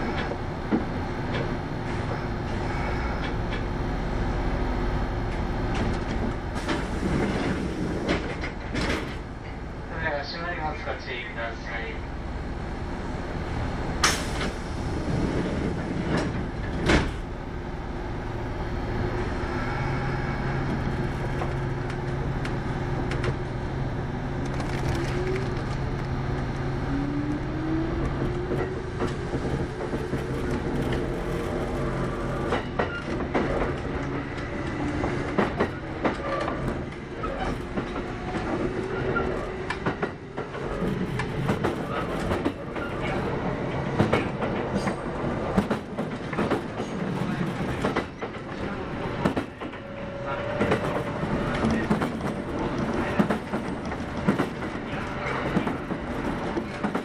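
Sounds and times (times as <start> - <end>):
train hum and rumble: 0.0 - 57.0
wheels clacking over rail joints: 28.0 - 57.0.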